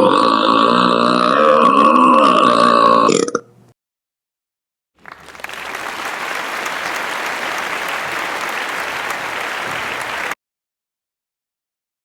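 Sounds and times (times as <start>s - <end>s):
crowd applauding: 5.0s - 10.4s.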